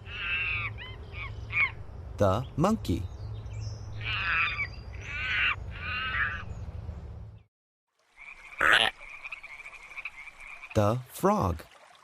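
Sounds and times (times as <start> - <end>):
low jungle hum: 0.0 - 7.5
monkey calls: 4.0 - 6.5.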